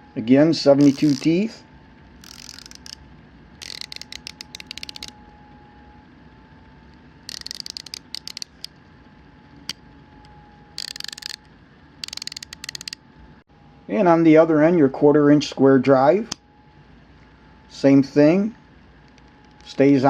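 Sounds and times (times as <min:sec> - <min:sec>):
ratchet wrench clicking: 0:00.8 - 0:01.4, 0:02.2 - 0:03.0, 0:03.6 - 0:05.1, 0:07.3 - 0:08.7, 0:10.8 - 0:11.4, 0:12.0 - 0:13.0.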